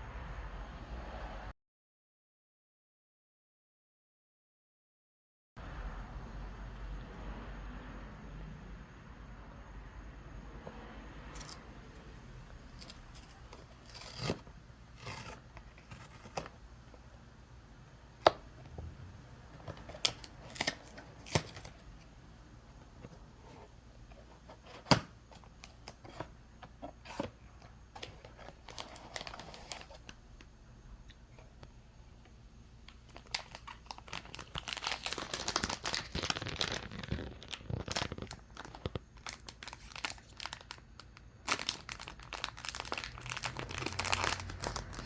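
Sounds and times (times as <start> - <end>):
plastic and paper crinkling: 23.0 - 30.2, 32.9 - 45.0.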